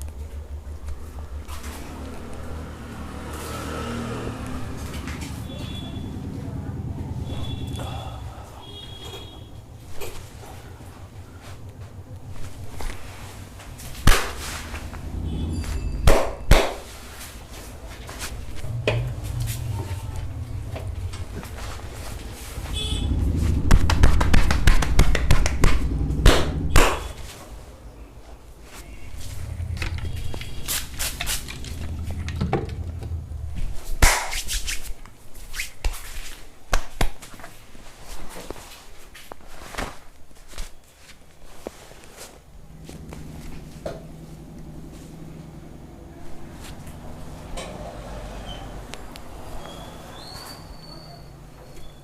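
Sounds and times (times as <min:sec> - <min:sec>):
low hum: 0:00.0 - 0:35.2, 0:42.4 - 0:49.4
low room rumble: 0:00.0 - 0:36.7, 0:41.2 - 0:51.6
hands rubbing skin and hair: 0:12.4 - 0:27.4, 0:28.6 - 0:32.2, 0:33.6 - 0:43.8
hands slapping body: 0:14.0 - 0:14.5, 0:16.1 - 0:16.9, 0:23.7 - 0:27.2, 0:34.0 - 0:34.9, 0:35.6 - 0:37.4.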